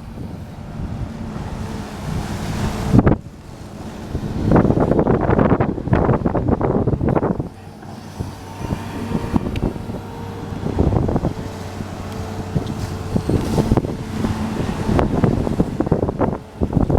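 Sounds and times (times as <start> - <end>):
engine running: 0.0 - 16.9
low thumps: 0.0 - 16.9
wind buffeting microphone: 0.0 - 16.9.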